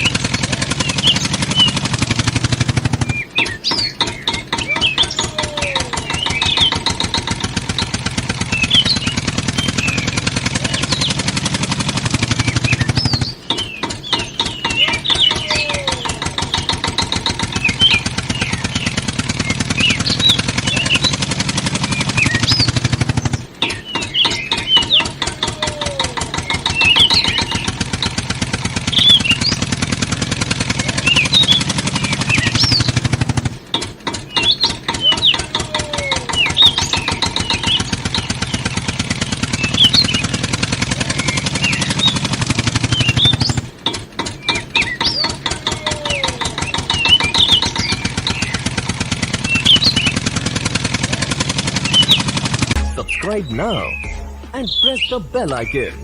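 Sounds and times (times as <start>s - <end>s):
tractor engine knocking: 0.0s - 56.0s
high chirps: 51.6s - 56.0s.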